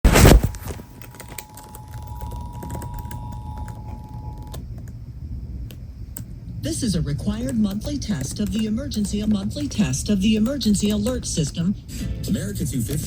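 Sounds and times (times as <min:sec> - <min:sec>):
two-tone alert signal: 0:01.4 - 0:04.6
irregular clicking: 0:05.6 - 0:06.3, 0:07.4 - 0:11.6.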